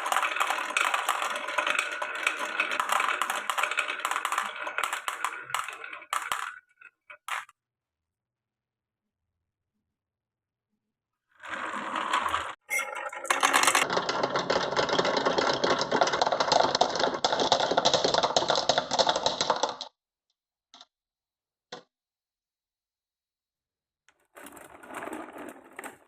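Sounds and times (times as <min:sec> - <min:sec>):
marbles rattling in marble run: 0:00.0 - 0:07.5, 0:11.4 - 0:19.9, 0:24.4 - 0:26.0.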